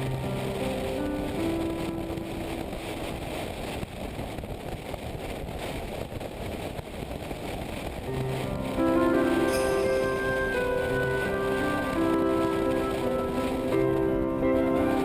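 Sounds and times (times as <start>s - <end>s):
motorcycle engine and wind noise: 0.0s - 15.0s
background music: 8.2s - 15.0s.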